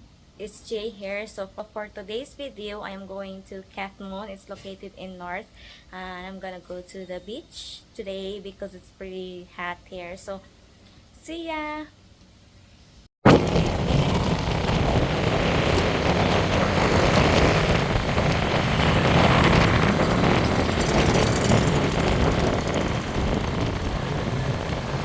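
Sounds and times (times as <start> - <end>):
vehicle engine noise: 13.3 - 25.0
wind rush from moving vehicle: 13.3 - 25.0.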